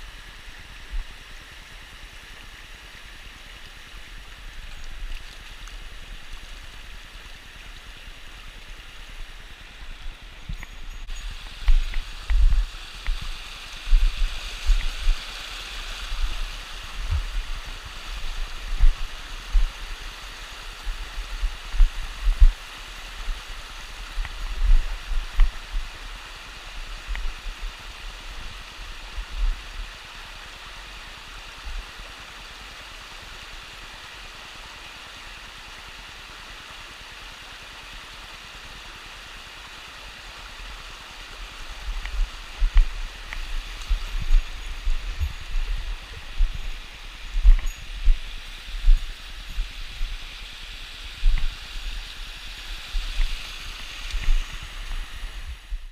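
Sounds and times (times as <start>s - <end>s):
stream rushing over rocks: 0.0s - 55.9s
rumbles and bumps on microphone: 10.5s - 15.2s, 16.1s - 20.0s, 20.8s - 22.6s, 24.1s - 25.9s, 41.8s - 50.3s, 51.2s - 52.0s.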